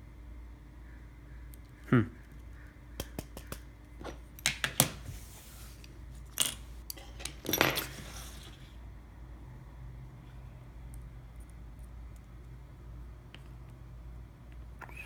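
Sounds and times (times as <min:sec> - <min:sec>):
tools and small parts clattering: 0:04.0 - 0:04.9, 0:06.3 - 0:08.6.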